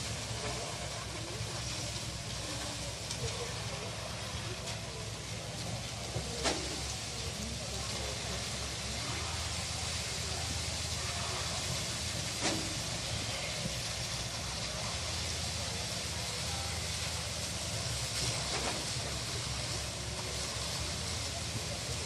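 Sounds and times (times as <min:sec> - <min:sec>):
engine running with hiss: 0:00.0 - 0:22.0.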